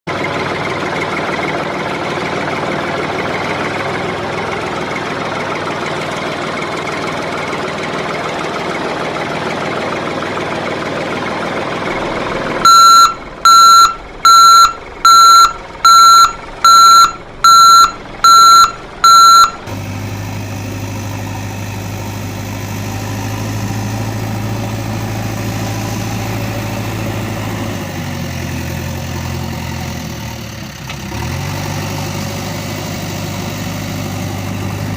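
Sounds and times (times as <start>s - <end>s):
diesel engine running: 0.1s - 34.9s
reversing alarm beeps: 12.6s - 19.6s.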